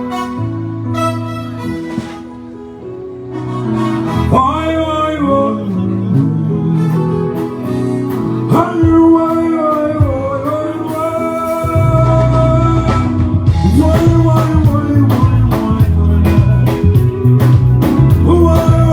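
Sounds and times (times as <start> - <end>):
sustained instrument chords: 0.0 - 8.1.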